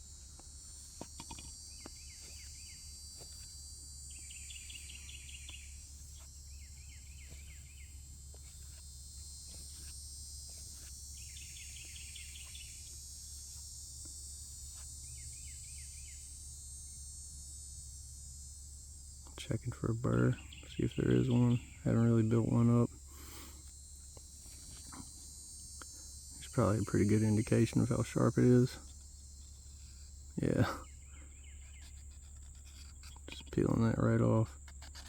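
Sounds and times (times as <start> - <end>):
crickets chirping: 0.0 - 35.0
bird singing a short phrase: 20.2 - 22.6.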